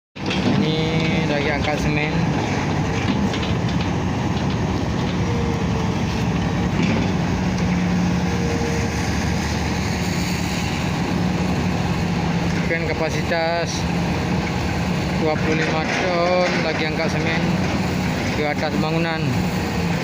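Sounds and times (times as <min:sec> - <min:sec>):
crane engine droning: 0:00.2 - 0:20.0.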